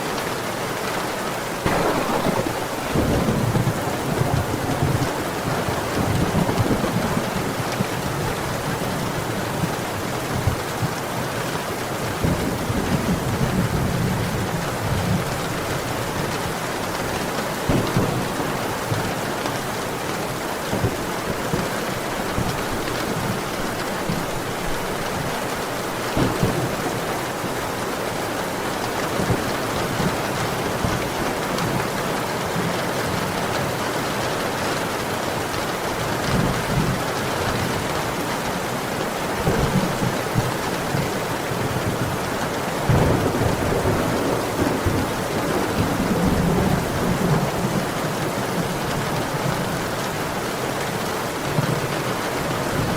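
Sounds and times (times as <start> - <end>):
heavy rain: 0.0 - 52.9
low rumbles: 1.7 - 5.4.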